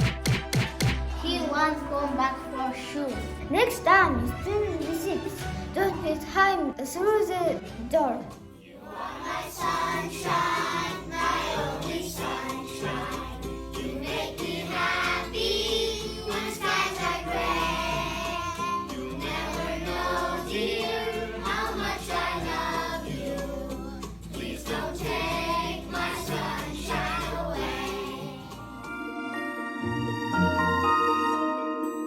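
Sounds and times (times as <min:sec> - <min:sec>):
musical backing with bass: 0:00.0 - 0:08.6, 0:09.3 - 0:32.0
group of voices singing: 0:08.5 - 0:29.5.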